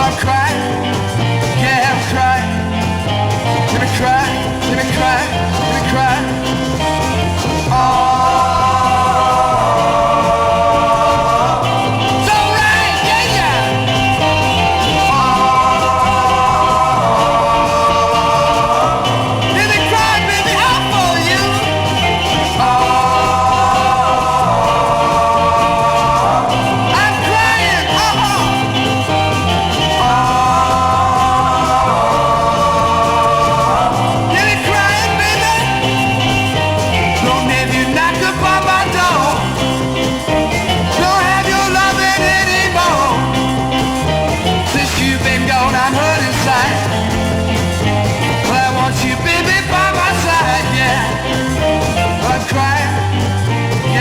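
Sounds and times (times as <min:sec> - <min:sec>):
held guitar chords: 0:00.0 - 0:54.0
repeating bass pattern: 0:00.0 - 0:54.0.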